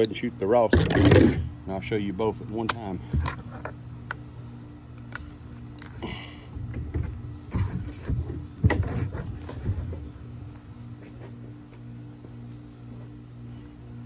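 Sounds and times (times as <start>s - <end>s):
knocks and clicks of gear: 0.0s - 1.5s
steady low hum: 0.0s - 14.0s.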